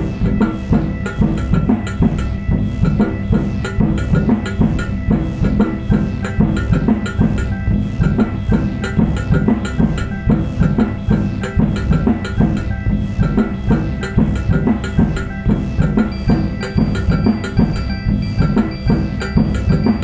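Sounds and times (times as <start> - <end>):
fast drum hits: 0.0 - 20.0
sustained synthesizer tones: 0.0 - 20.0.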